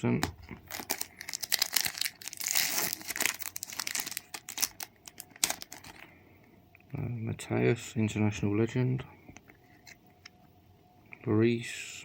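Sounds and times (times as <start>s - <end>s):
foil wrapper tearing and crinkling: 0.7s - 6.0s.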